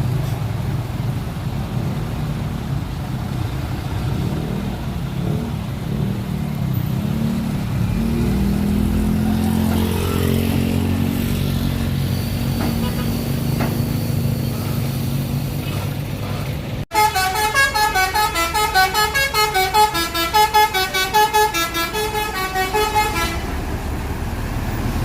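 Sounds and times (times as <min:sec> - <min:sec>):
road traffic: 0:00.0 - 0:25.0
heavy engine droning: 0:07.2 - 0:25.0.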